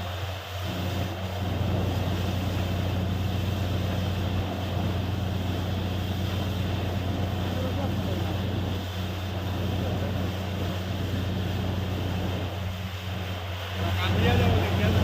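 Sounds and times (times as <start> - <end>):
drilling rig engine humming: 0.0 - 15.0.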